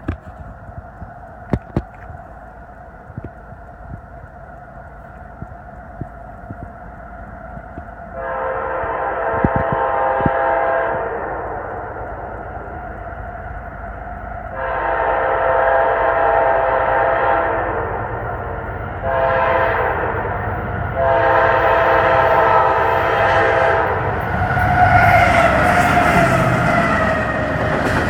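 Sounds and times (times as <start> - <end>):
train rumble: 0.0 - 28.0
locomotive air horn blasts: 8.2 - 11.7, 14.5 - 18.1, 19.0 - 27.4.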